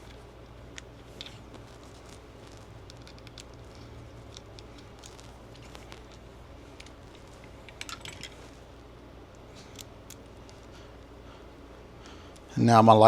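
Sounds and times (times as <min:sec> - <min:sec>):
small parts clicking and tapping: 0:00.0 - 0:06.2, 0:06.8 - 0:08.5, 0:09.3 - 0:10.7
low steady hum: 0:00.0 - 0:13.0.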